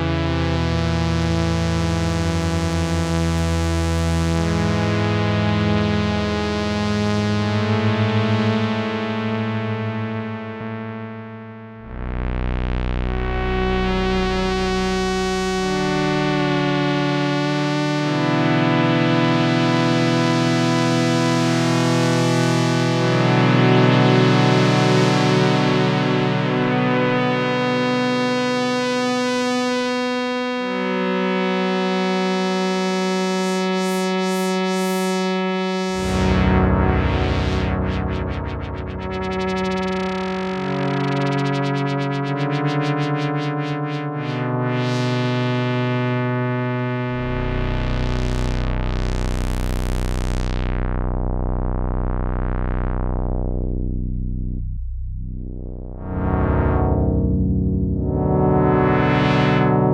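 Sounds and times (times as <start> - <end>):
synthesizer chords: 4.2 - 29.3, 35.8 - 59.9
deep bass note: 11.8 - 17.3, 35.9 - 41.4, 46.9 - 59.6.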